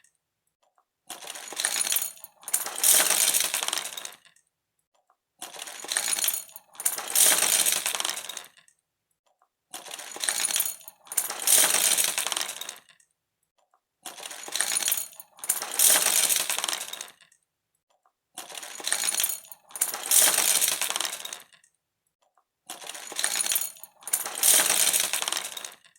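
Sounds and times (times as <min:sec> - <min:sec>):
small hard objects clattering: 0:01.1 - 0:04.3, 0:05.4 - 0:08.6, 0:09.7 - 0:13.0, 0:14.0 - 0:17.3, 0:18.4 - 0:21.6, 0:22.7 - 0:25.9.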